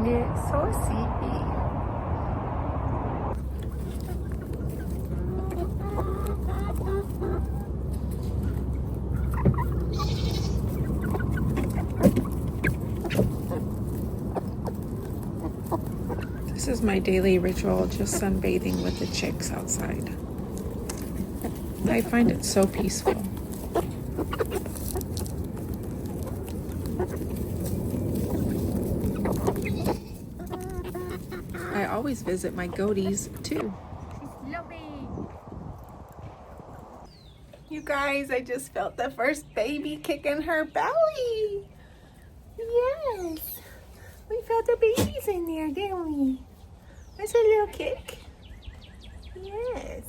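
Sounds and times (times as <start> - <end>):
rushing noise: 0.0 - 3.4
low steady rumble: 0.0 - 49.3
chickens clucking: 3.3 - 34.6.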